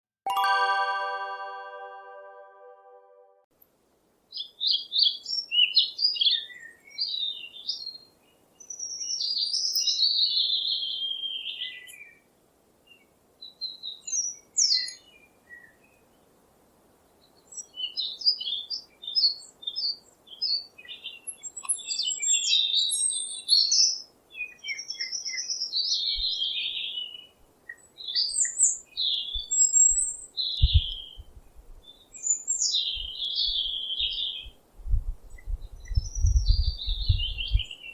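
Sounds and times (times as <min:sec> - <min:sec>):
birds singing: 0:32.0 - 0:34.5, 0:35.4 - 0:37.9.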